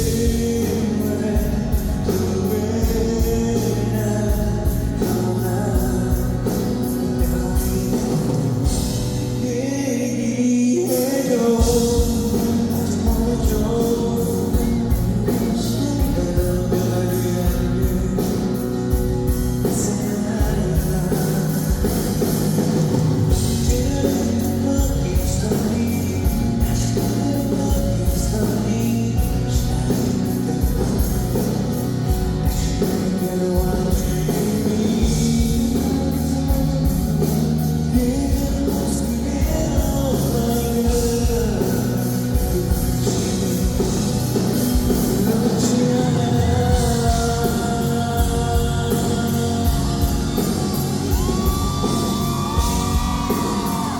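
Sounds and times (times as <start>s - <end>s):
man singing: 0.0s - 53.9s
rock band playing: 0.0s - 53.9s
drum beat: 46.2s - 53.9s.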